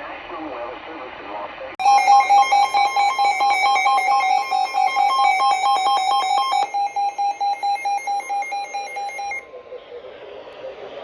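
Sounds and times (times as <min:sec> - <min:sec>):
pulsing beep: 0:01.8 - 0:09.4
two-pitch buzzy alarm tone: 0:01.8 - 0:09.4.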